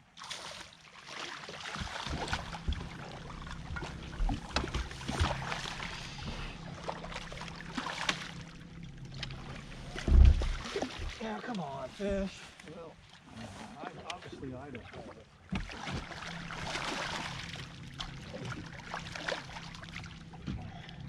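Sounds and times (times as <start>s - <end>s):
river water rushing around boat: 0.0s - 14.4s, 15.0s - 21.0s
low steady hum: 0.9s - 21.0s.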